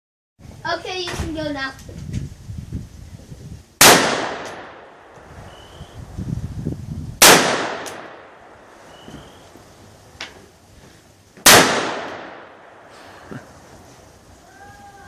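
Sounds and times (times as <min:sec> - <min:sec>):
rifle shots with echo: 0:03.8 - 0:05.1, 0:07.2 - 0:08.6, 0:11.4 - 0:12.9.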